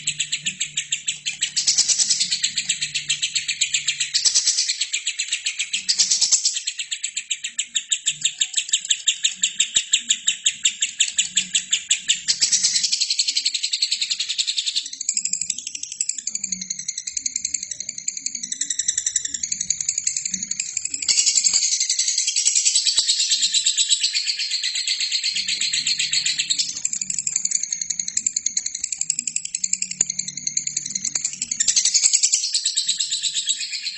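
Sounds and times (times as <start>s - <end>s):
lovebird chirping and warbling: 0.0s - 33.9s.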